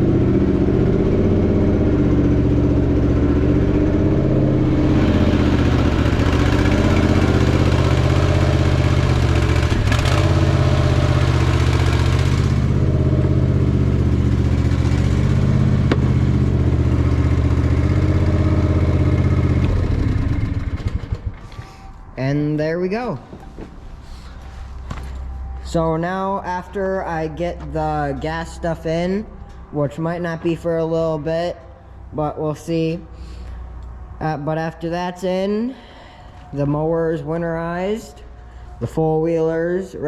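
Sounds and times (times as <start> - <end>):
small engine running: 0.0 - 21.5.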